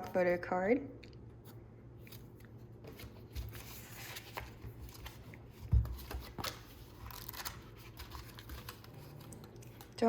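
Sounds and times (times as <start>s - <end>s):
rustling of cards: 2.0s - 10.0s.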